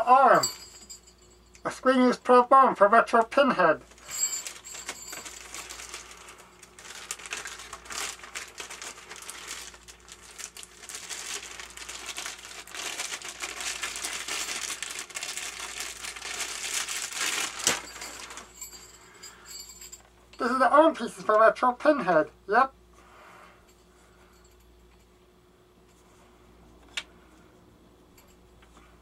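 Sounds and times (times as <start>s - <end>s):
packing material crinkling: 3.8s - 18.9s
sharp crackle: 4.0s - 18.6s.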